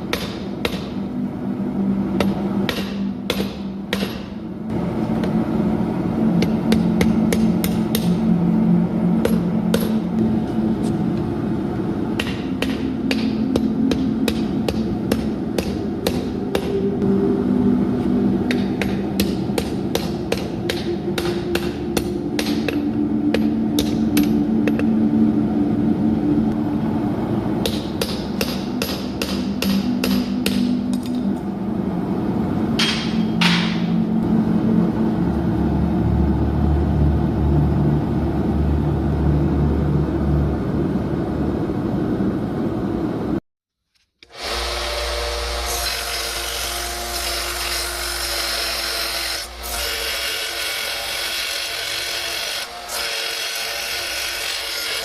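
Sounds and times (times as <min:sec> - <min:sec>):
hammer striking steel on anvil: 0:00.0 - 0:01.1, 0:02.2 - 0:04.4, 0:06.4 - 0:08.2, 0:09.2 - 0:10.0, 0:12.2 - 0:16.8, 0:18.4 - 0:24.9, 0:27.6 - 0:31.3, 0:32.8 - 0:34.0
steady low hum: 0:00.0 - 0:43.4.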